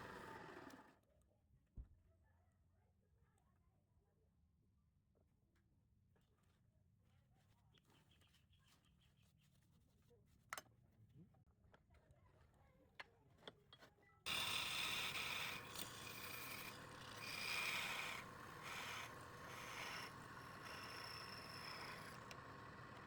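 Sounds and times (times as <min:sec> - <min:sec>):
wood scraping on lathe: 0:00.0 - 0:00.8, 0:14.3 - 0:23.0
steady hum: 0:14.3 - 0:23.0.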